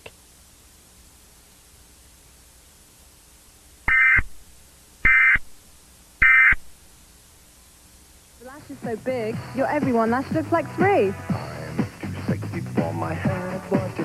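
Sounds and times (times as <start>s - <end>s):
buzzy digital tone bursts: 3.9s - 4.3s, 6.2s - 6.7s.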